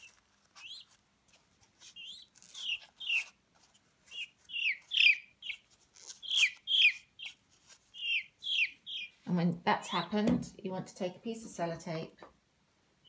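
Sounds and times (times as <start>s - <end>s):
peachick peeping: 0.0s - 3.4s, 4.0s - 9.2s.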